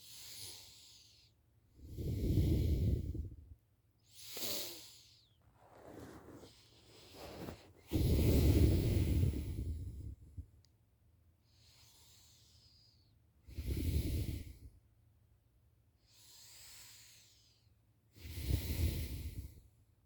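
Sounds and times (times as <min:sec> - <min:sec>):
soft breath out: 0:00.0 - 0:03.5, 0:04.2 - 0:10.4, 0:11.6 - 0:14.8, 0:16.2 - 0:19.7
person snoring heavily: 0:07.2 - 0:10.0.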